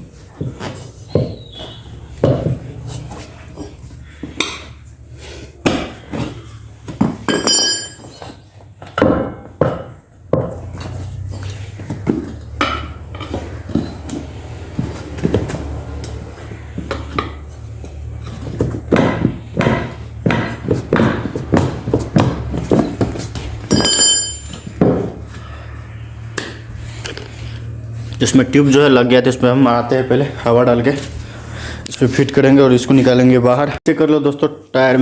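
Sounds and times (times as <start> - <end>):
metal tools clinking on wheel: 7.2 - 8.4, 23.6 - 24.7
short metallic ring: 7.3 - 8.2, 23.7 - 24.6.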